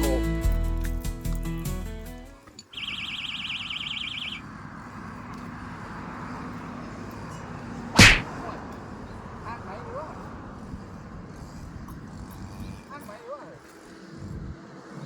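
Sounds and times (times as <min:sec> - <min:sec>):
electronic alarm warbling: 0:02.8 - 0:04.4
loud thump: 0:08.0 - 0:08.3.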